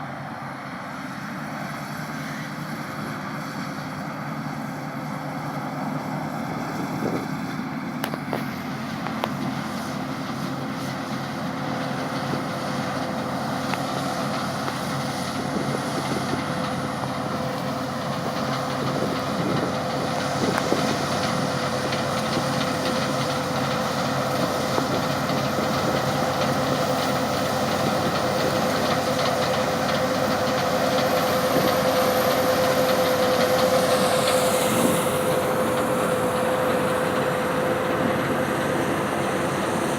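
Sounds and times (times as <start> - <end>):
combine harvester running: 0.0 - 39.9
machine whine: 14.6 - 39.9.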